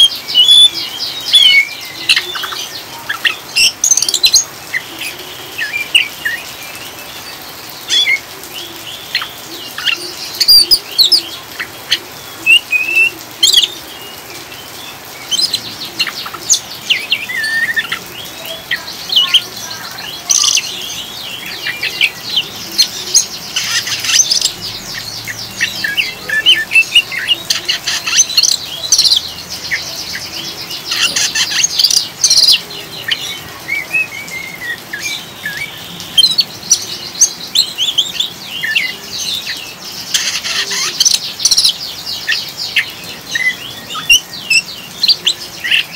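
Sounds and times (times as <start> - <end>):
rain hiss: 0.0 - 45.9
bird twittering call: 15.2 - 45.9.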